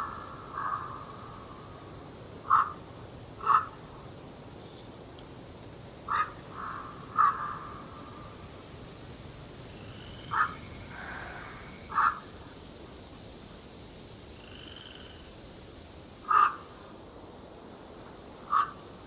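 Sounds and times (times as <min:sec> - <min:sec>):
soft background hiss: 0:00.0 - 0:19.0
bird calling loudly: 0:02.5 - 0:02.8, 0:03.4 - 0:03.8, 0:06.1 - 0:08.0, 0:09.9 - 0:12.3, 0:16.3 - 0:16.6, 0:18.5 - 0:18.8.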